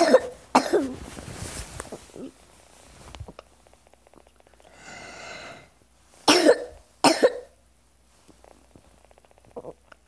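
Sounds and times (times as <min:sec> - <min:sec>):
harsh coughs: 0:00.0 - 0:00.9, 0:06.3 - 0:07.6
labored breath: 0:04.6 - 0:05.7.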